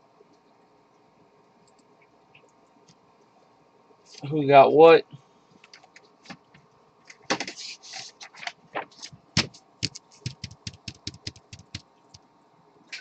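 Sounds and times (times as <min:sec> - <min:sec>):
typing on computer keyboard: 0:09.4 - 0:11.8.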